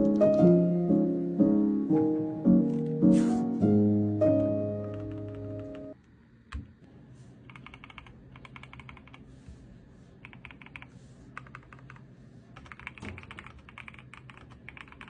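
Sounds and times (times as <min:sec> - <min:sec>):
mechanical keyboard typing: 0:04.8 - 0:06.0, 0:07.5 - 0:09.2, 0:10.2 - 0:12.0, 0:12.6 - 0:15.0.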